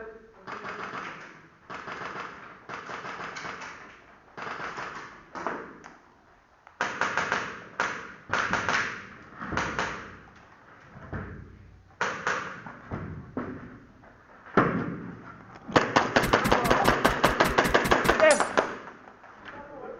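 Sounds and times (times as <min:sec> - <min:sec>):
airsoft gun shots: 0:15.9 - 0:18.8.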